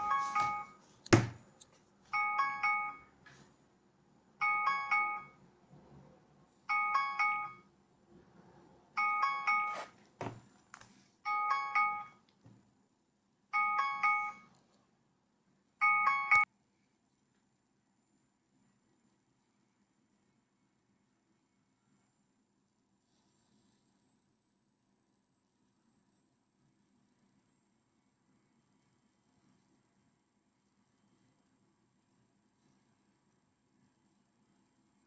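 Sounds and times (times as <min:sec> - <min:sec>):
phone alarm chiming tune: 0:00.0 - 0:00.8, 0:02.2 - 0:03.2, 0:04.4 - 0:05.4, 0:06.7 - 0:07.7, 0:09.0 - 0:09.9, 0:11.3 - 0:12.2, 0:13.6 - 0:14.5, 0:15.8 - 0:16.5.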